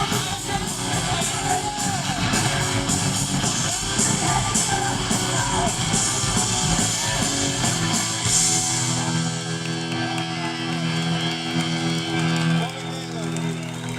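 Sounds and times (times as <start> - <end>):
distorted electric guitars: 0.0 - 13.9
drums: 0.0 - 13.9.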